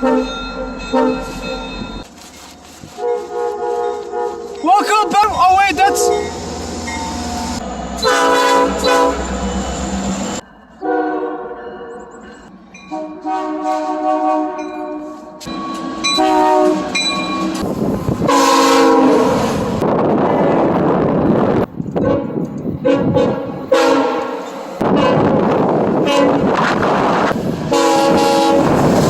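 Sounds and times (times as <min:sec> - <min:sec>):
train rumbling by: 0:00.0 - 0:29.0
locomotive air horn blasts: 0:02.9 - 0:04.6, 0:05.8 - 0:06.4, 0:08.0 - 0:09.3, 0:10.8 - 0:11.6, 0:12.9 - 0:15.3, 0:16.1 - 0:19.7, 0:22.0 - 0:25.4, 0:26.0 - 0:26.8, 0:27.7 - 0:29.0.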